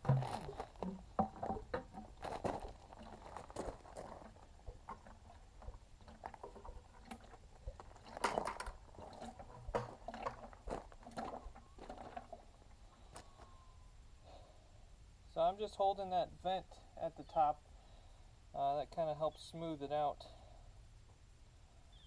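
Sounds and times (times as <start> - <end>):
oil glugging into bucket: 0.0 - 13.2.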